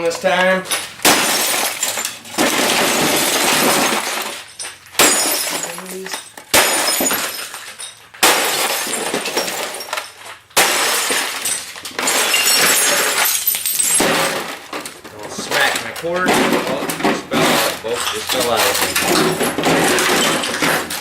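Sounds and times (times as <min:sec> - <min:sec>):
heavy blows smashing television: 0:00.6 - 0:21.0
glass breaking and tinkling: 0:00.7 - 0:14.7, 0:15.5 - 0:21.0.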